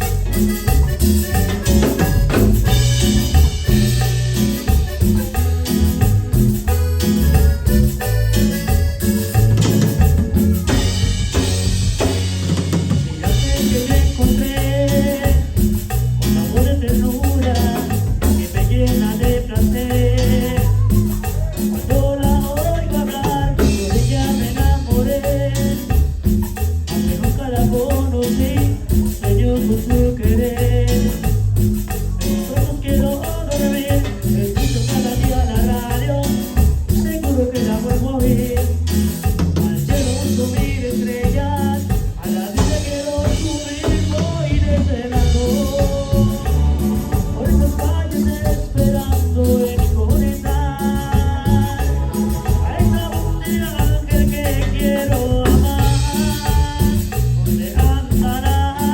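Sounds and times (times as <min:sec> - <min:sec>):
bass line: 0:00.0 - 0:58.9
drums: 0:00.0 - 0:58.9
live band playing dance music: 0:00.0 - 0:58.9
person singing: 0:13.1 - 0:26.1, 0:26.9 - 0:58.9.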